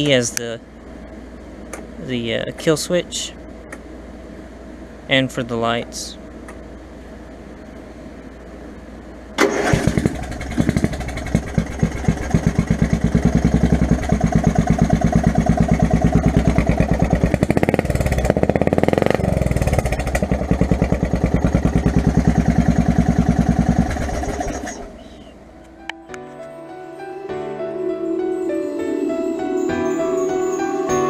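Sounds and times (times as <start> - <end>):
lawn mower engine running: 9.4 - 25.2.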